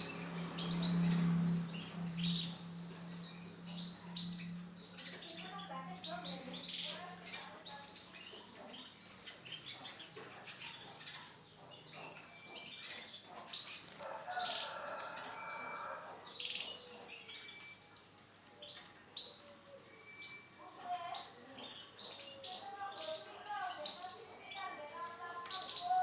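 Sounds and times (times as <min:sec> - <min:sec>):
canary chirping: 0:00.0 - 0:26.0.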